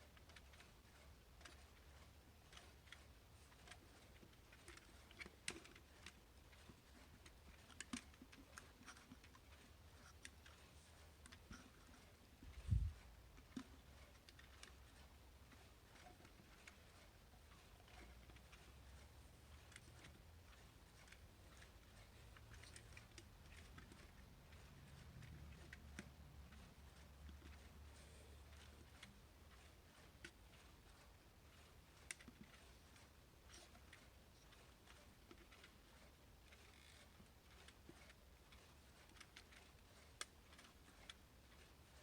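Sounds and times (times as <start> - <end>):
hands handling plastic alarm clock: 0.1 - 41.7.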